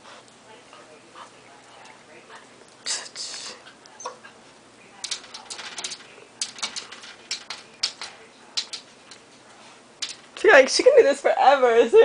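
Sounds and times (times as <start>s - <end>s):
dog claws scratching hard surface: 5.0s - 9.3s, 10.0s - 10.4s.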